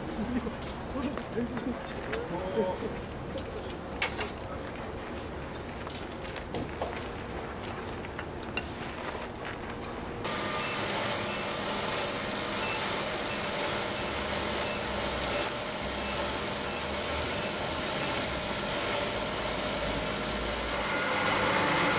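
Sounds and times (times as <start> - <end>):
sawmill machinery running: 10.2 - 21.9
reversing alarm beeps: 10.3 - 19.1.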